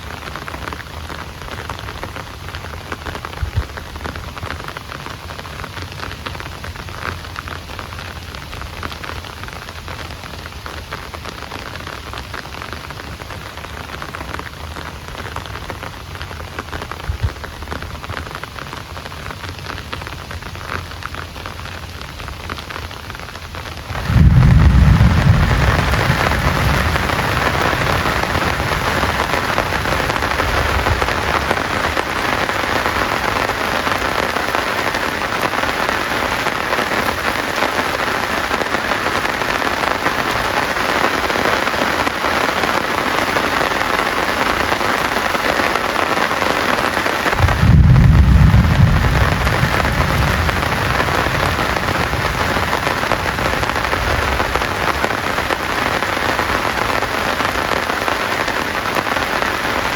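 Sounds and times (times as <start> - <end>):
heavy rain falling: 0.0 - 59.9
thunder rumbling: 23.7 - 38.5, 47.3 - 59.9.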